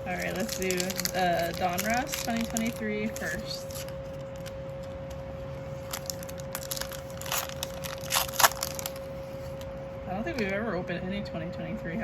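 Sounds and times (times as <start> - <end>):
plastic wrapper crinkling and tearing: 0.0 - 9.7
faint steady hum: 0.0 - 12.0.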